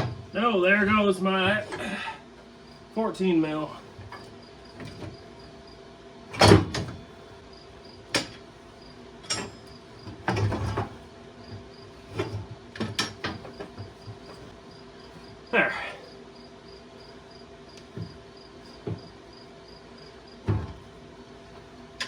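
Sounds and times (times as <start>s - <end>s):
faint cricket chirp: 7.2s - 10.2s, 13.5s - 21.3s.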